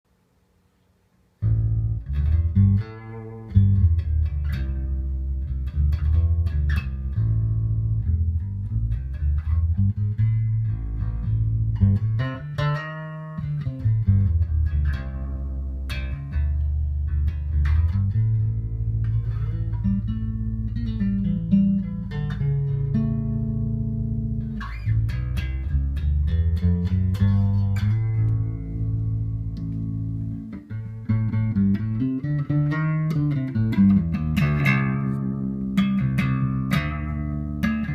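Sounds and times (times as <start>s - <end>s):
electric bass plucked riffs: 1.4s - 37.9s.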